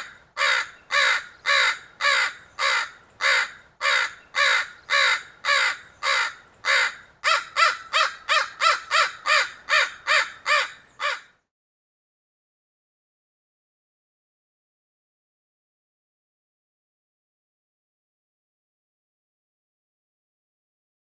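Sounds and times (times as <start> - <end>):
crow cawing: 0.0 - 11.4.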